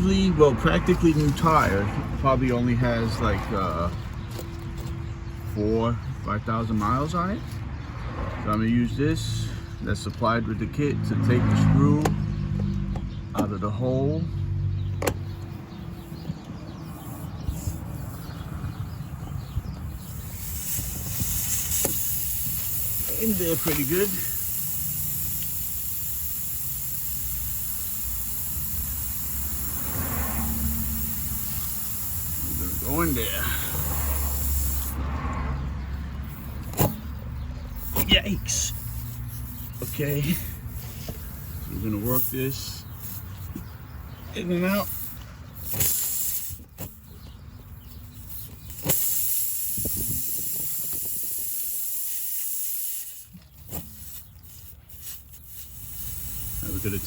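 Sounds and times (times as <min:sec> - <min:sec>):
air hissing from tire: 0:00.0 - 0:05.7, 0:14.8 - 0:57.0
high hiss: 0:20.0 - 0:35.0, 0:48.8 - 0:57.0.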